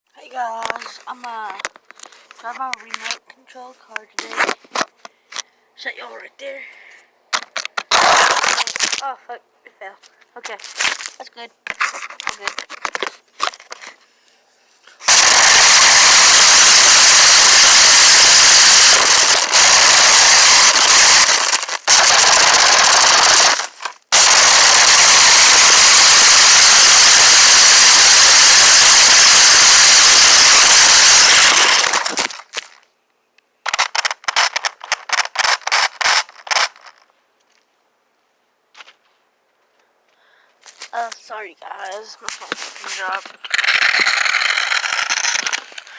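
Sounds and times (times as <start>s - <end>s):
toy car rattling clatter: 7.6s - 9.0s, 15.0s - 32.8s, 33.6s - 37.1s, 42.2s - 45.9s
sharp clicks: 33.4s - 37.0s.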